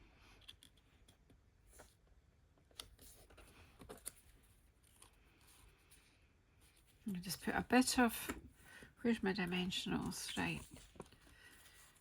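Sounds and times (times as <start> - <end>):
paper and card rustling: 2.7 - 12.0.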